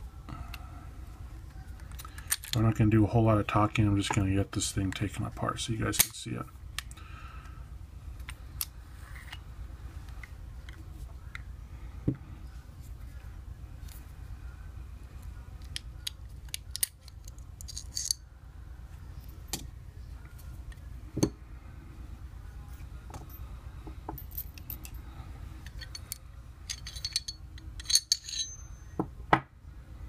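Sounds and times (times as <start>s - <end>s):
pistol parts clicking and clinking: 1.8s - 2.6s, 15.6s - 18.2s, 25.6s - 29.1s.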